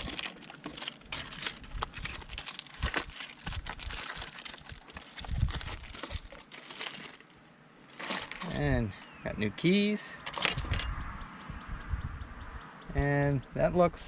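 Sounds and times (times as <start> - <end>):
packaging crinkling and rustling: 0.0 - 9.0.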